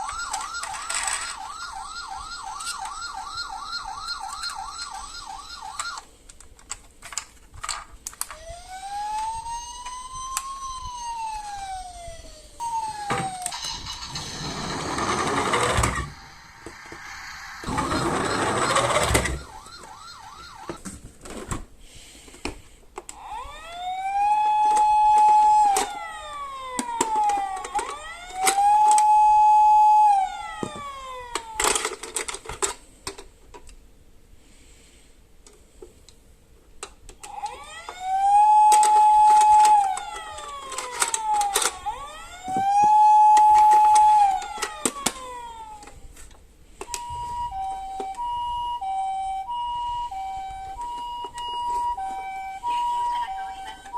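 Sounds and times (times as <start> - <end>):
toy siren wailing: 0.0 - 6.0, 8.3 - 20.8, 23.1 - 31.9, 37.2 - 46.0, 46.9 - 53.9.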